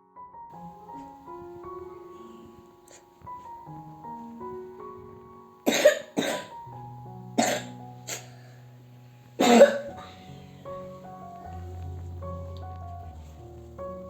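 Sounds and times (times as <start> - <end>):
soft piano music: 0.0 - 14.0
person coughing: 5.7 - 6.5, 7.4 - 8.3, 9.4 - 10.1.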